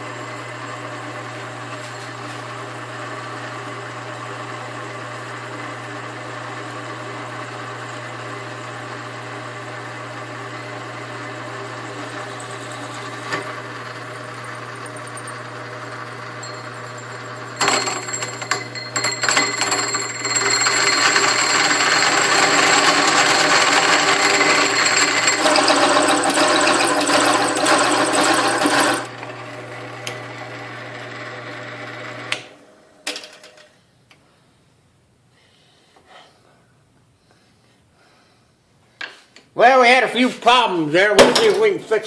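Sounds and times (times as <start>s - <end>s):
band saw motor running: 0.1s - 32.5s
saw blade cutting steel: 21.1s - 29.1s.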